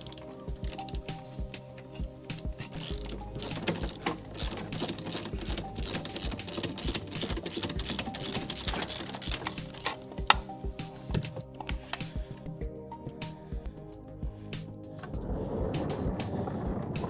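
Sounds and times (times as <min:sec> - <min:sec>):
socket ratchet clicking: 0:00.0 - 0:11.4.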